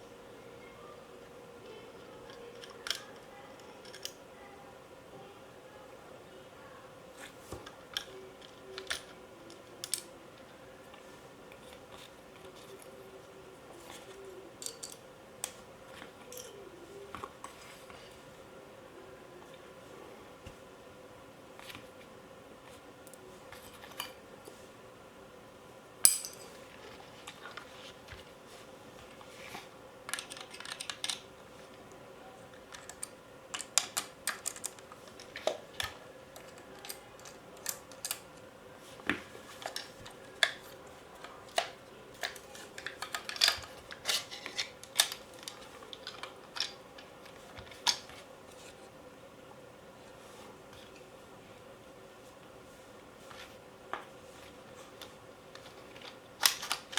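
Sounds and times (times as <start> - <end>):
metal gun parts clinking: 26.1 - 26.6.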